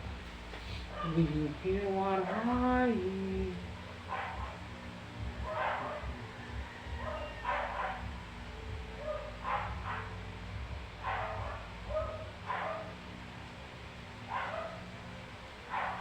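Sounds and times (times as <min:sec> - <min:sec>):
low hum: 0:00.0 - 0:16.0
dog barking: 0:04.1 - 0:04.7, 0:05.4 - 0:06.3, 0:06.9 - 0:08.2, 0:09.0 - 0:10.3, 0:11.0 - 0:13.1, 0:14.2 - 0:15.0, 0:15.6 - 0:16.0.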